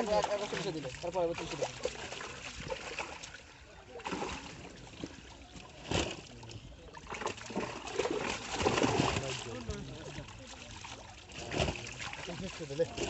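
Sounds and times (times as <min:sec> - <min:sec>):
water splashing and trickling: 0:00.0 - 0:13.0.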